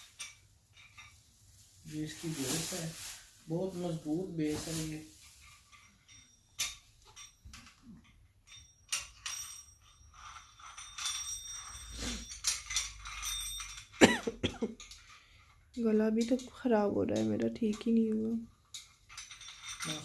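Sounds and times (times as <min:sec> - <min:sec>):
heater parts clicking and knocking: 0:12.3 - 0:20.0.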